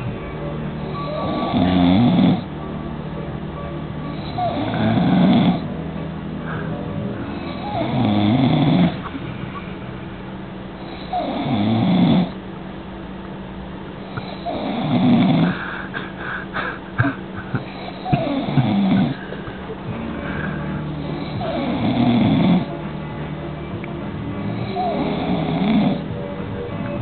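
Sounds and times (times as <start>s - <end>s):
loud rasping snores: 0.8s - 2.5s, 4.1s - 5.7s, 7.4s - 9.0s, 10.8s - 12.4s, 14.1s - 15.7s, 17.0s - 19.2s, 21.0s - 22.7s, 24.6s - 26.1s.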